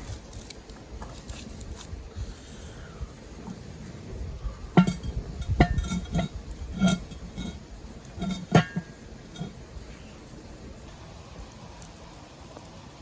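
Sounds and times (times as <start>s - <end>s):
metal utensils clinking on cookware: 4.8s - 7.6s, 8.2s - 9.6s.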